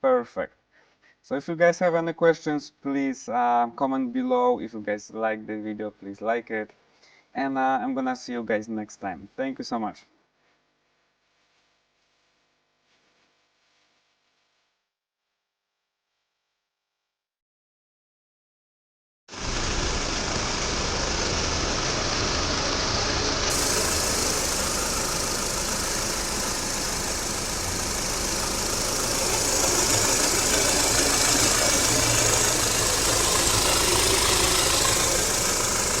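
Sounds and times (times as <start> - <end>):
car engine running: 19.4 - 36.0.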